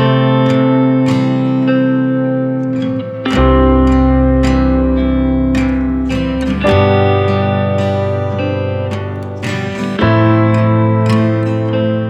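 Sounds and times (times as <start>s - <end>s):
guitar music: 0.0s - 12.0s.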